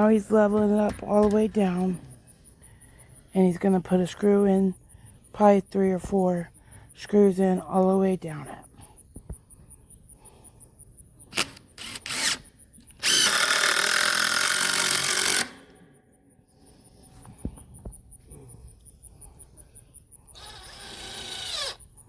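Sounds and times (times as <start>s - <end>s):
power drill driving screw: 11.3s - 15.8s, 20.3s - 21.9s.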